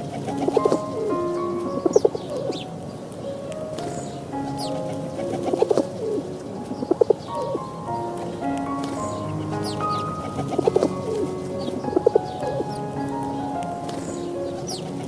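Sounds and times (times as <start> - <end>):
light background music: 0.0 - 15.0.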